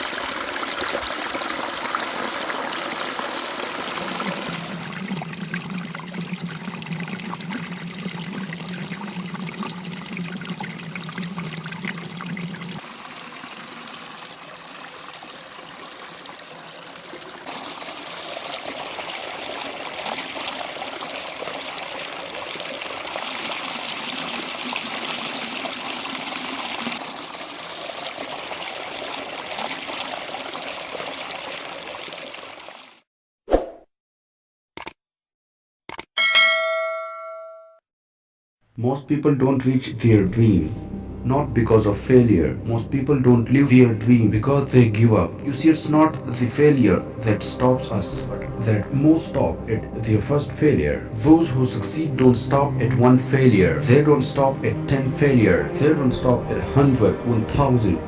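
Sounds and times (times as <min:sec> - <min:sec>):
stream water flowing: 0:00.0 - 0:33.0.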